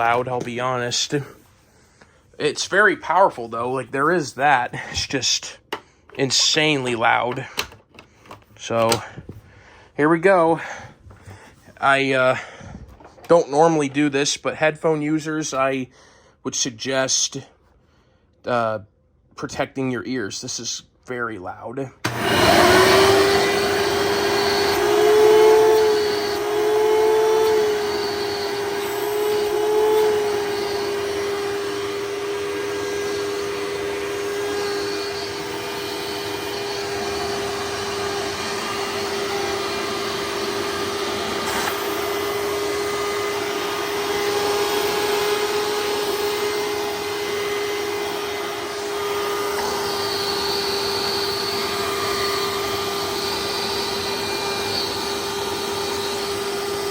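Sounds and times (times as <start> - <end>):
upright vacuum cleaner whine: 22.0 - 56.9.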